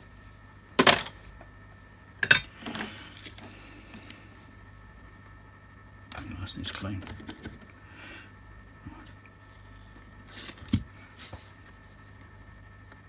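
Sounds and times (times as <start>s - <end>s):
low electrical hum: 0.0s - 13.0s
light rustles on workbench: 10.3s - 11.8s.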